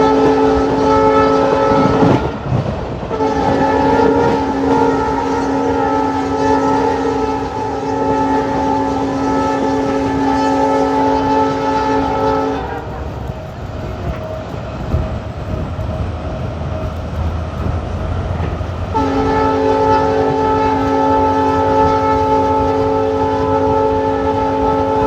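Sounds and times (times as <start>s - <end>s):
locomotive air horn chord: 0.0s - 2.5s, 3.1s - 13.2s, 18.9s - 25.0s
train rumbling along track: 0.0s - 25.0s.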